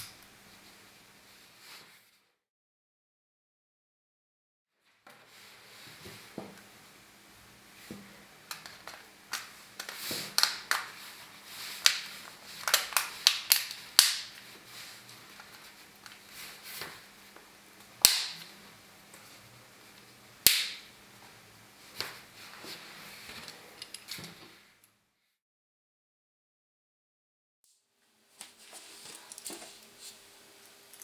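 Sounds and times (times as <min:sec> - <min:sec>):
small parts clicking and snapping: 0:08.5 - 0:11.0, 0:11.8 - 0:14.5.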